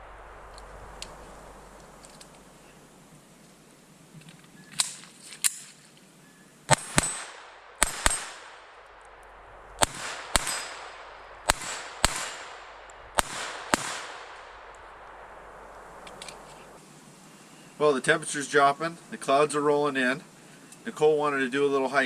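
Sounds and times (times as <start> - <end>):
pistol shots with echo: 6.7 - 16.8.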